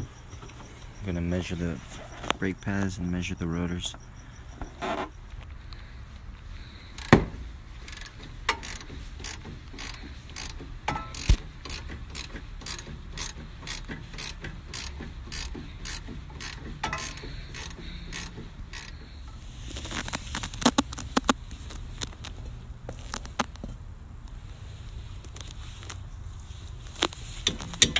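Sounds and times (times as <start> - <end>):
ratchet wrench clicking: 6.9 - 19.4, 27.4 - 27.9.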